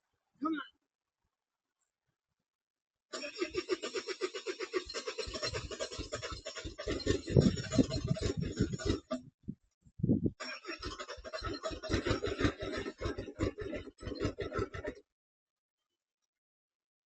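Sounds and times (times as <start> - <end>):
starter motor cranking diesel engine: 3.2 - 9.1.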